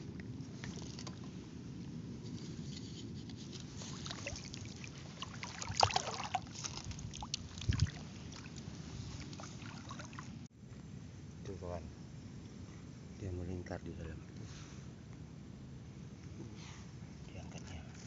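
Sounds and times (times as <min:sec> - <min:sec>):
water sloshing and splashing: 0:00.0 - 0:01.5, 0:02.3 - 0:10.5.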